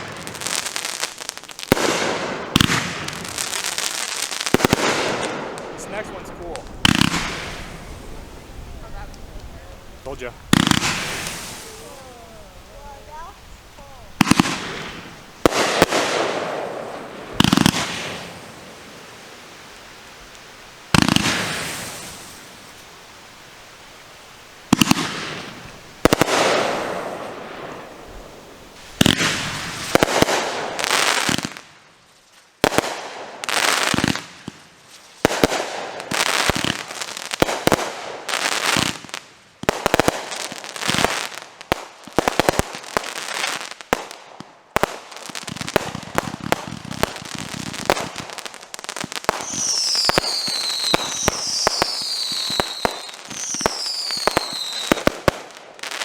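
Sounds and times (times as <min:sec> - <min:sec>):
firework crackling: 0:00.0 - 0:56.0
firework launch thumps and bursts: 0:01.7 - 0:03.3, 0:04.5 - 0:08.1, 0:10.1 - 0:11.9, 0:14.2 - 0:18.5, 0:20.9 - 0:22.5, 0:24.7 - 0:27.5, 0:28.8 - 0:31.6
falling firework whistles: 0:10.5 - 0:12.1, 0:14.2 - 0:23.2, 0:49.0 - 0:56.0.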